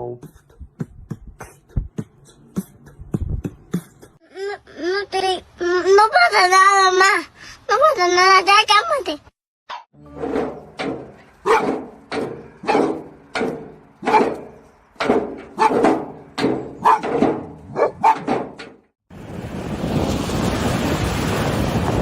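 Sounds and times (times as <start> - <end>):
dog barking: 11.4 - 11.8, 12.6 - 13.0, 14.0 - 14.4, 15.5 - 15.9, 16.8 - 17.1, 17.7 - 18.3.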